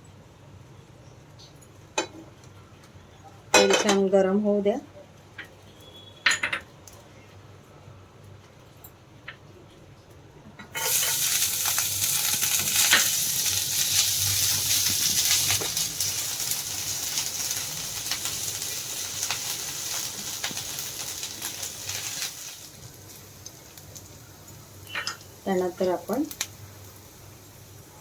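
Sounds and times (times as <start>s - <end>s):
oil sizzling in a pan: 10.7s - 28.0s.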